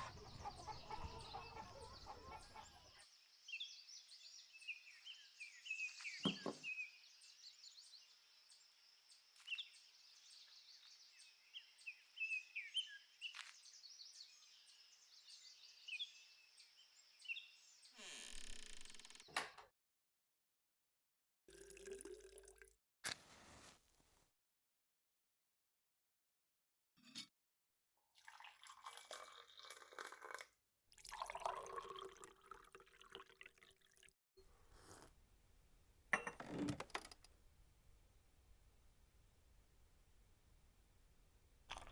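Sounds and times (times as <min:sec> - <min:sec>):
small birds chirping: 0:00.0 - 0:19.4
water with fine crackles: 0:28.2 - 0:34.1, 0:41.6 - 0:41.9.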